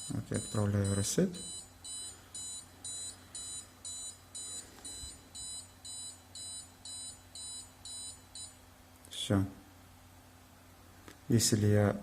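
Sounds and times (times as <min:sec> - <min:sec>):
alarm buzzer beeping: 0:00.0 - 0:08.6.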